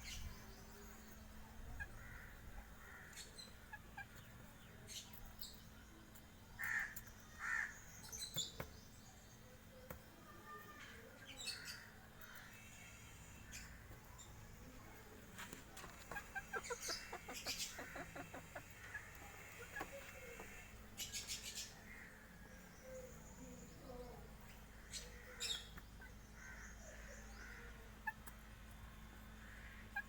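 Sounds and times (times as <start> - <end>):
young chickens clucking and chirping: 0.0 - 30.0.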